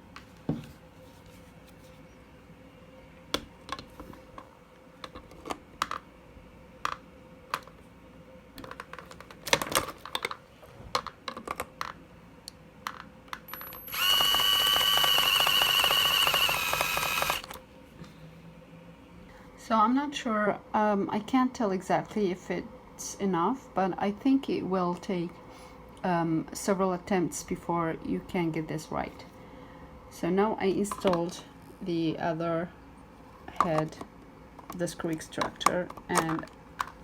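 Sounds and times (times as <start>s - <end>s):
electric screwdriver whining: 13.6s - 17.6s.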